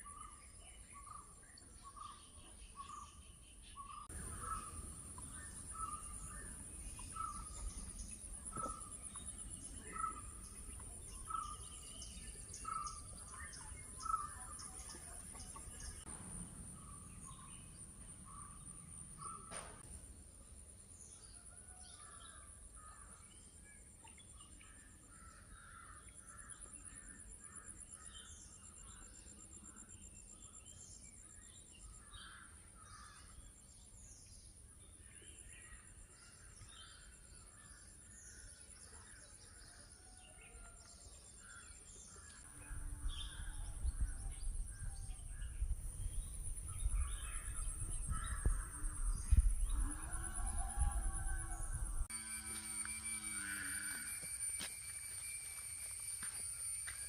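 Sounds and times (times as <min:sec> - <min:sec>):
birds calling and chirping: 0:00.0 - 0:19.9, 0:41.4 - 0:52.1
high-pitched insect drone: 0:48.3 - 0:57.0.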